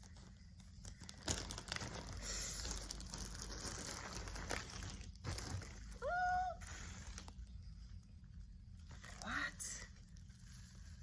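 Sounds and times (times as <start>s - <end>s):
packaging crinkling: 0.0s - 7.5s.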